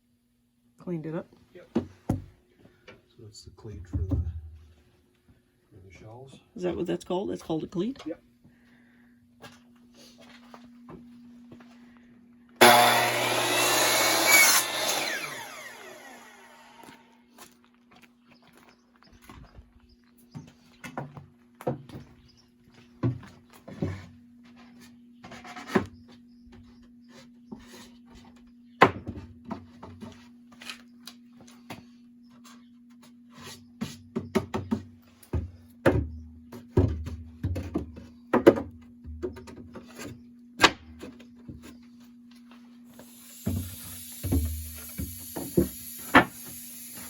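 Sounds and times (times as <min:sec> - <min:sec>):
hiss: 0:43.0 - 0:47.0.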